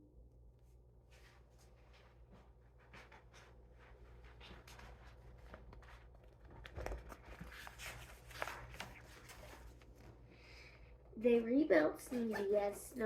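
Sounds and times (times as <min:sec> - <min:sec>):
book pages turning: 0:04.4 - 0:10.2.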